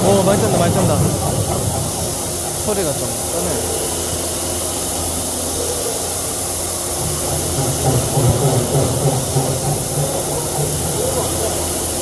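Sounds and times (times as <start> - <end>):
electric drill running: 0.0 - 12.0.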